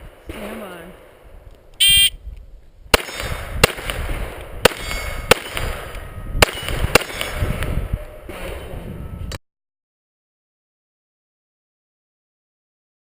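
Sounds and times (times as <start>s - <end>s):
shot timer beep: 1.8s - 2.2s
pistol shots: 2.9s - 7.6s.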